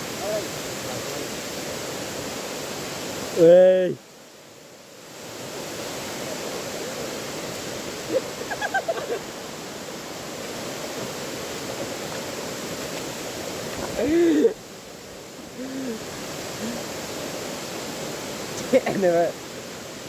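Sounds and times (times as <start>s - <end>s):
waterfall roaring: 0.0s - 4.0s, 5.2s - 20.0s
person's voice: 14.0s - 14.6s, 18.6s - 19.4s.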